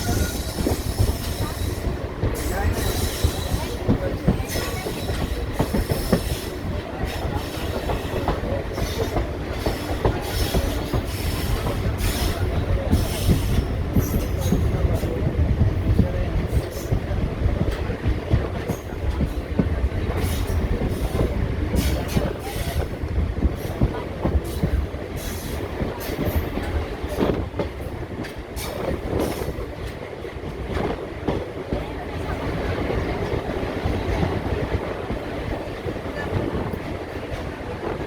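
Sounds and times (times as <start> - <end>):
train wheels rumbling on rails: 0.0 - 38.0.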